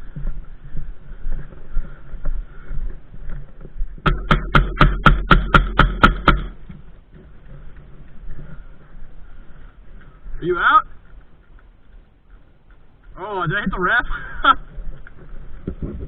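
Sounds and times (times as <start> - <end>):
airsoft gun shots: 4.1 - 6.6.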